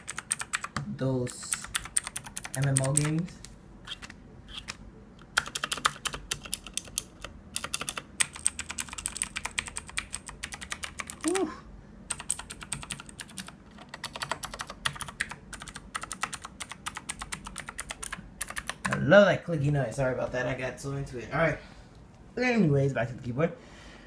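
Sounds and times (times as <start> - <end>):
mechanical keyboard typing: 0.0 - 11.4, 12.1 - 19.0.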